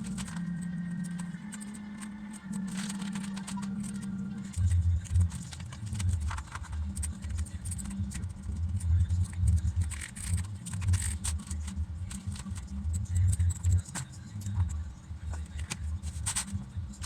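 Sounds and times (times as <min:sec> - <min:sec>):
mechanical keyboard keys clicking: 0:00.0 - 0:14.7
low pulsing rumble: 0:03.6 - 0:17.0.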